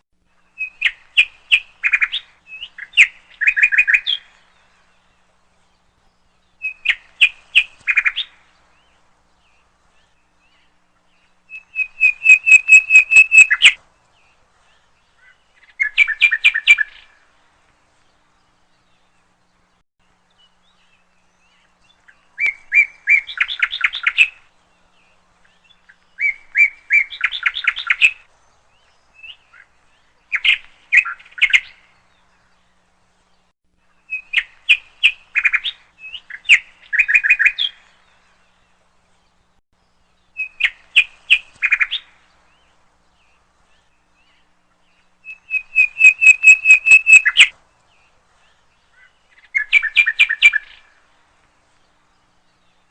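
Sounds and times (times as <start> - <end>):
songbird chirps and trills: 0.2 - 52.9.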